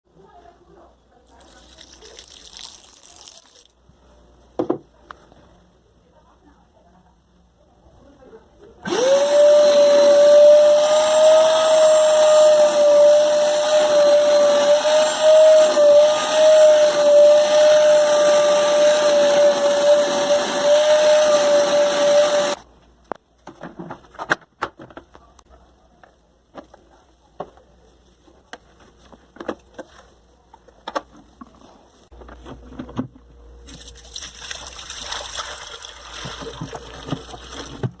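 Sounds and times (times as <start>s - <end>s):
vacuum cleaner motor whining: 8.8s - 22.6s.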